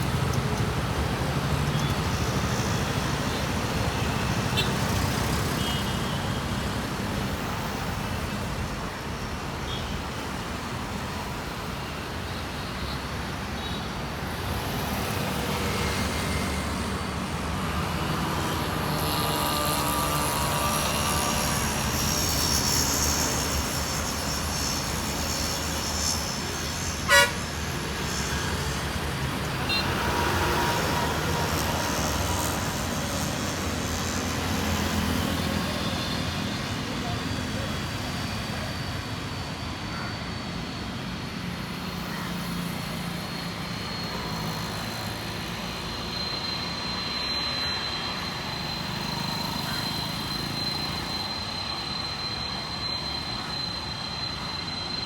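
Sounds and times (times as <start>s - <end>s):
jet engines rumbling and whining: 0.0s - 55.0s
short horn toot: 27.0s - 27.5s.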